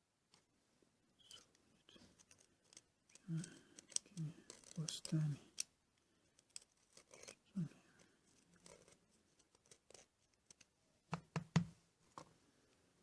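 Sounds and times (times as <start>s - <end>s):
hand tool scraping a lock: 2.2s - 5.2s, 6.5s - 7.4s.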